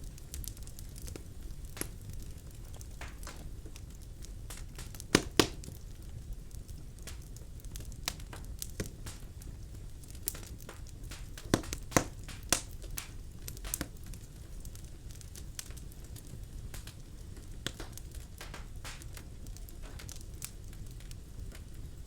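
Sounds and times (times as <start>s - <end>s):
fire crackling and popping: 0.0s - 22.0s
low rumble of flames: 0.0s - 22.0s.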